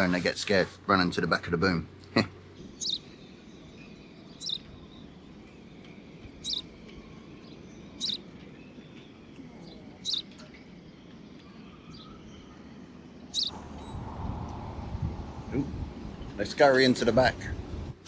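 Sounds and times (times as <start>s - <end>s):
young birds chirping: 2.4s - 14.0s.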